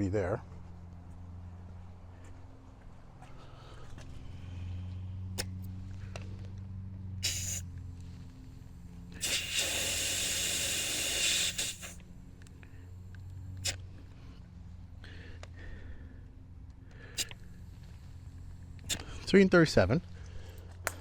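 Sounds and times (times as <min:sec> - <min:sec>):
steady low hum: 0:00.0 - 0:21.0
compressed air hissing: 0:07.2 - 0:14.1, 0:17.0 - 0:19.3.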